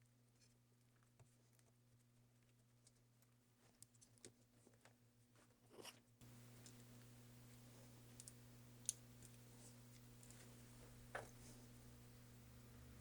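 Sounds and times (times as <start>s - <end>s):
low steady hum: 0.0s - 13.0s
small parts clicking and scraping: 5.7s - 11.8s.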